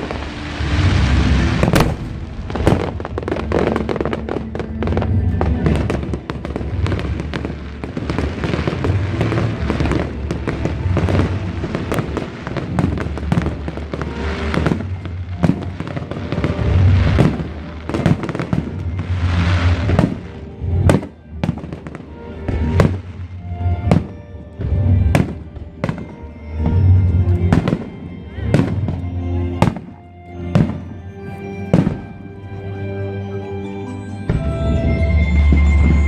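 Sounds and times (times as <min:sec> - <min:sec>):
deep booming rumbles: 0:00.0 - 0:06.0
fireworks bangs and crackling: 0:00.0 - 0:32.7, 0:34.3 - 0:36.0
music: 0:00.0 - 0:36.0.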